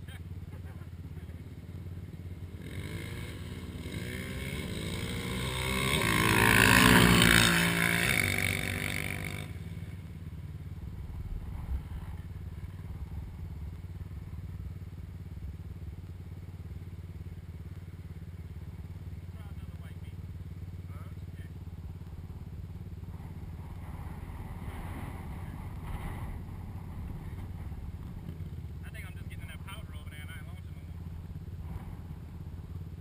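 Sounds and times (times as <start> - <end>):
low steady hum: 0.0 - 33.0
atv engine racing past: 2.5 - 15.0, 22.0 - 29.0, 31.0 - 33.0.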